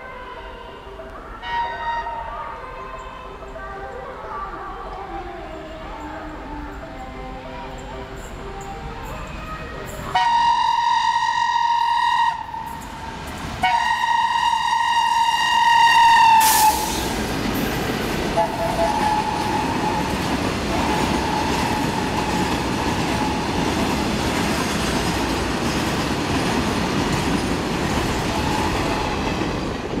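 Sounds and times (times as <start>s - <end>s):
shrill locomotive horn: 10.1s - 12.8s, 13.6s - 17.0s, 18.4s - 23.7s
train wheels rumbling on rails: 12.4s - 30.0s.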